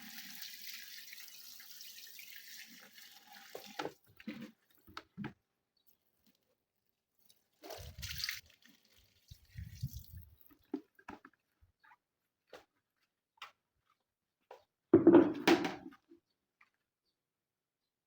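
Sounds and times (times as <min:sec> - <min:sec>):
water splashing and dripping: 0:00.0 - 0:04.1, 0:07.2 - 0:10.8.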